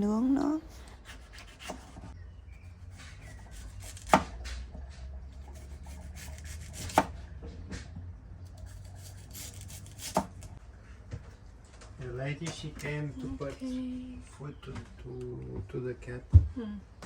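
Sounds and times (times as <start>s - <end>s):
knife slicing vegetables: 0.9s - 2.1s, 5.4s - 7.2s, 8.6s - 10.5s.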